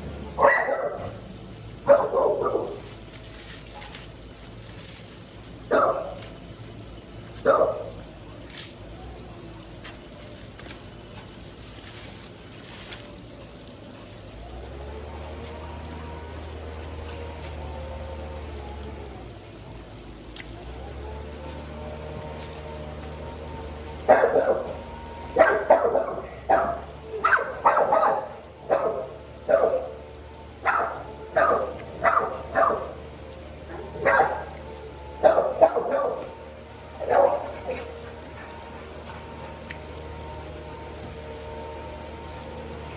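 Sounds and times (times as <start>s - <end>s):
foliage rustling: 0.0s - 42.9s
low steady hum: 0.0s - 42.9s
dog barking: 0.4s - 1.2s, 1.8s - 2.9s, 5.7s - 6.3s, 7.4s - 8.0s, 24.0s - 30.0s, 30.6s - 33.1s, 33.7s - 38.1s
pruning shears snipping: 2.1s - 6.5s, 20.2s - 30.0s.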